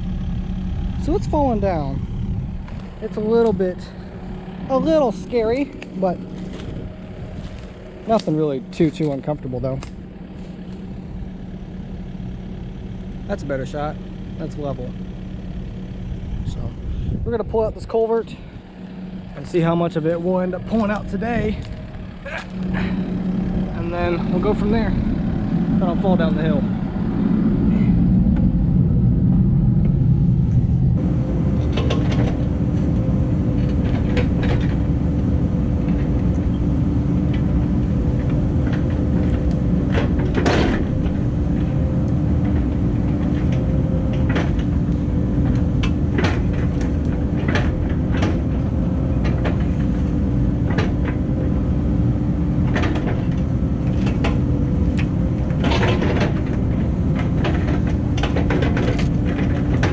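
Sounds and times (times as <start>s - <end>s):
excavator diesel engine: 0.0s - 59.9s
knocks and clanks: 31.6s - 32.9s, 33.6s - 34.9s, 38.2s - 41.8s, 42.4s - 51.4s, 52.6s - 59.9s.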